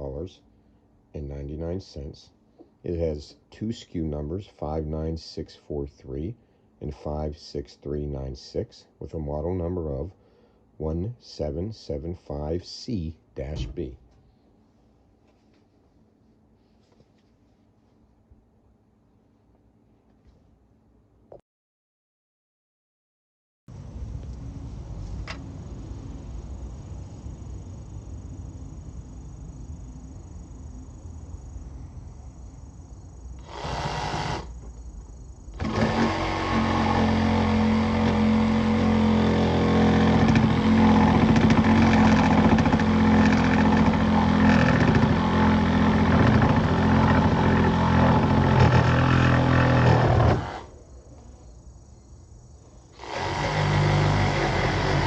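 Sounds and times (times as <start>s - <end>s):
cordless reciprocating saw running: 33.4s - 34.5s, 35.5s - 50.7s, 53.0s - 55.0s.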